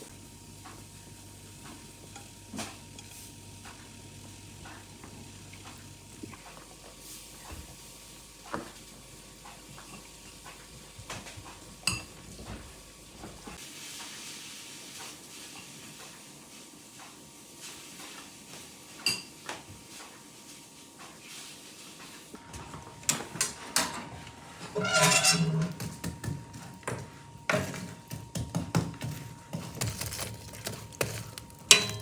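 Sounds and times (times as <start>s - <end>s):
dishes and utensils clattering: 11.5s - 12.7s, 23.1s - 32.0s.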